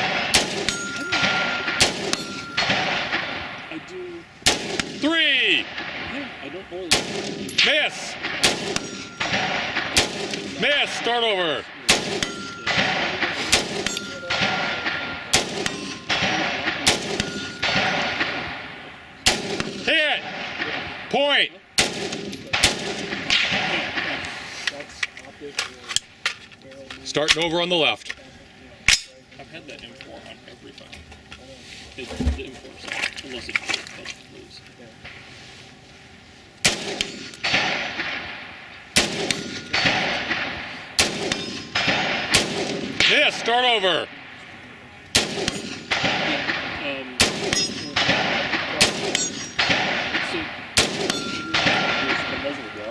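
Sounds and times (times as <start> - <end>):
rifle shots with echo: 0.0 - 24.5, 36.6 - 52.9.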